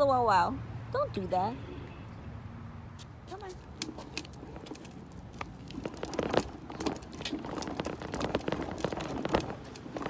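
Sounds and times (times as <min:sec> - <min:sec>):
footsteps walking: 0:03.0 - 0:10.0
small clicks crackles and rustles: 0:03.7 - 0:10.0.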